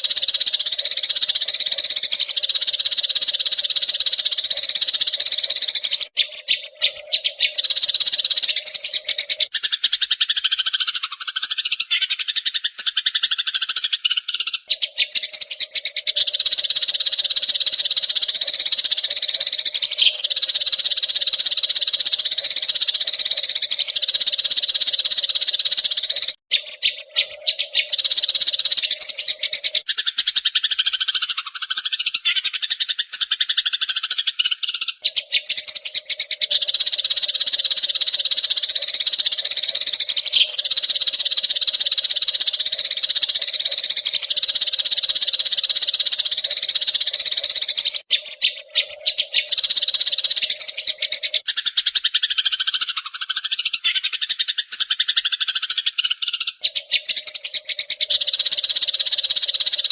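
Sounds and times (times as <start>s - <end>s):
sparrows chirping: 0.0s - 59.9s.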